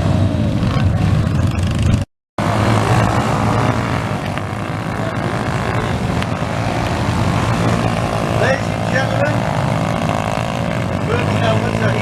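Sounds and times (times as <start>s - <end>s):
small motorcycle engines running: 0.0s - 12.0s.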